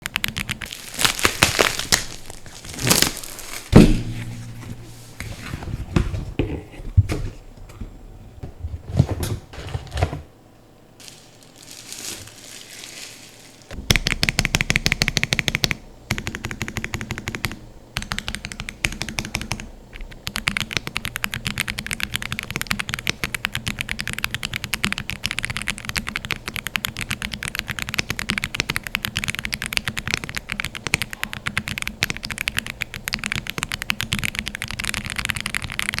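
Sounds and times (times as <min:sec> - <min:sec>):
mechanical keyboard typing: 0:00.0 - 0:00.7, 0:13.9 - 0:36.0.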